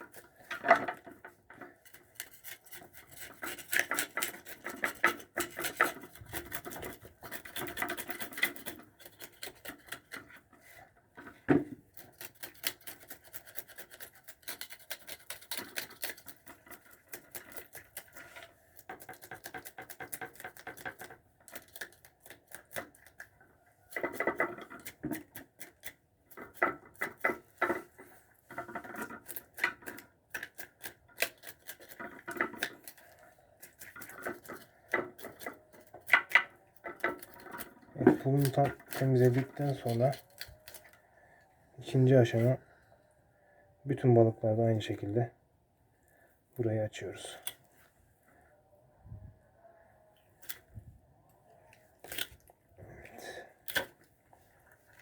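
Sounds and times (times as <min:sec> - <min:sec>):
knife scraping fish scales: 0:01.8 - 0:10.9, 0:11.8 - 0:23.3, 0:28.8 - 0:41.0, 0:52.0 - 0:52.5.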